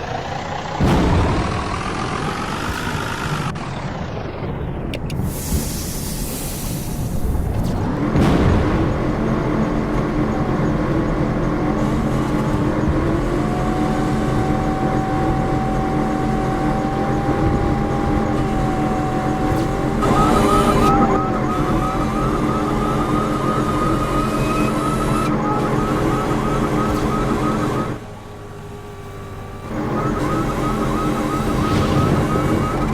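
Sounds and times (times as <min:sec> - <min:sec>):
vehicle engine running: 0:00.0 - 0:32.9
rapid electronic chirps: 0:20.0 - 0:28.0, 0:29.7 - 0:32.9
whistle-like tone: 0:20.0 - 0:28.0, 0:29.7 - 0:32.9.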